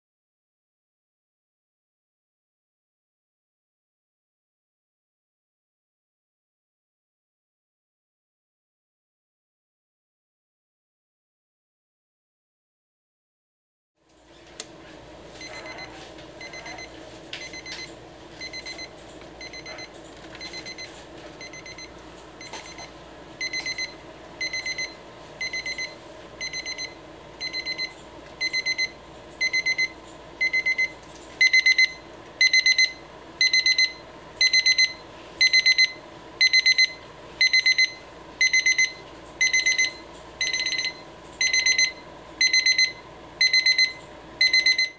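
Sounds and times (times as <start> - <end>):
alarm clock beeping: 15.4 - 44.9.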